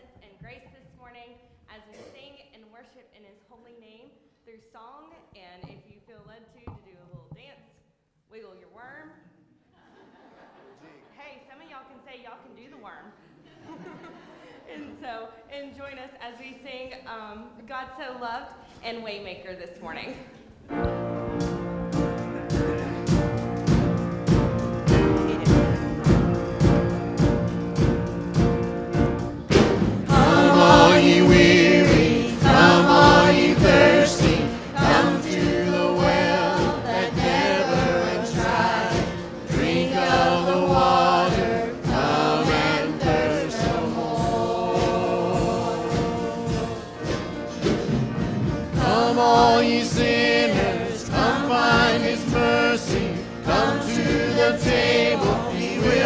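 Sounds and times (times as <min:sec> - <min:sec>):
instrumental music with beat: 0:20.7 - 0:56.0
people singing worship song: 0:29.5 - 0:56.0.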